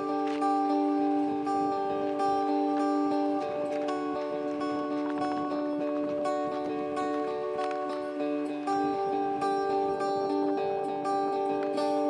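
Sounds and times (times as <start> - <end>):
acoustic guitar chords: 0.0 - 12.0.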